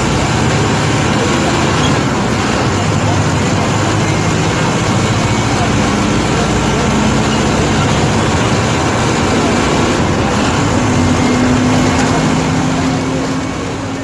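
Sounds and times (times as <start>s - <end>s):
bus diesel engine droning: 0.0s - 14.0s.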